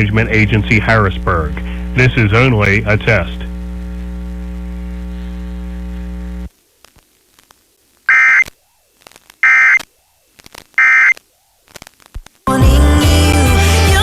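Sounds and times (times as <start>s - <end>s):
electrical hum: 0.0s - 13.4s
warbling data tone bursts: 8.1s - 11.2s.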